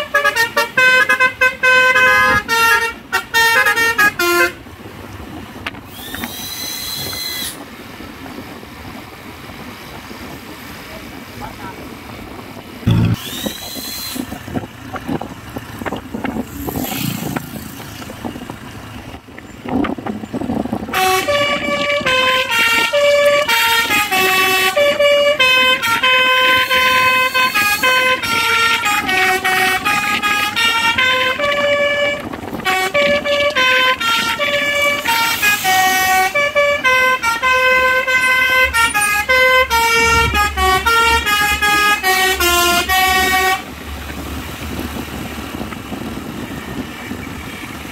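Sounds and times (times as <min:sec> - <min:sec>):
truck horn playing a tune: 0:00.0 - 0:04.7, 0:12.9 - 0:13.2, 0:20.8 - 0:43.7
vehicle noise: 0:00.0 - 0:47.9.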